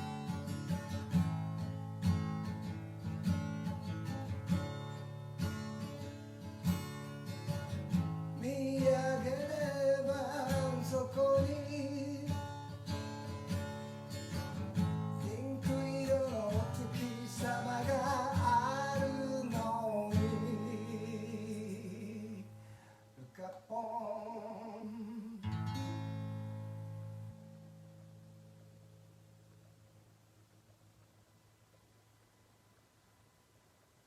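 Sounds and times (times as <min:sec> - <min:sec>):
acoustic guitar strumming chords: 0:00.0 - 0:29.7
person singing: 0:08.4 - 0:12.4, 0:15.2 - 0:22.5, 0:23.2 - 0:25.6.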